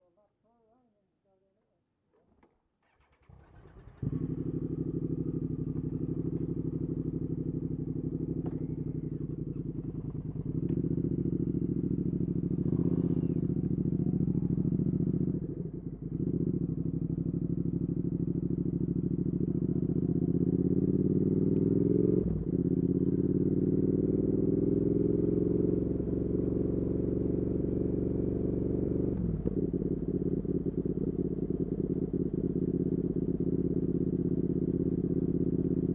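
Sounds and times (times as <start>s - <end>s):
motorcycle engine accelerating: 2.8s - 35.9s.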